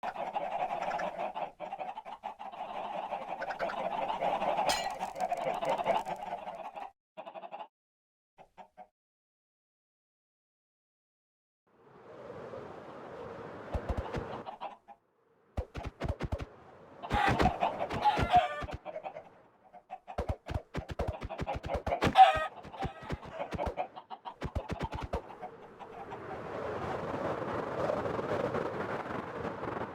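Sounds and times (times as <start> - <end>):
chickens clucking and squawking: 0.0 - 7.7, 13.8 - 15.0, 17.0 - 26.4
chickens squawking: 17.0 - 26.1.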